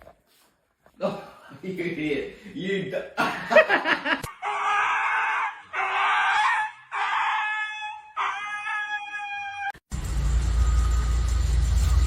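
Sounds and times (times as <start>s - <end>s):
dog crying high-pitched: 4.3s - 9.8s.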